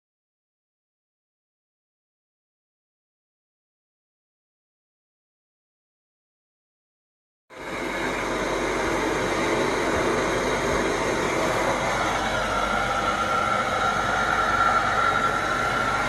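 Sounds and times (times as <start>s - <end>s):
machine whine: 7.5s - 16.0s
extraction machine suction rushing: 7.6s - 16.0s.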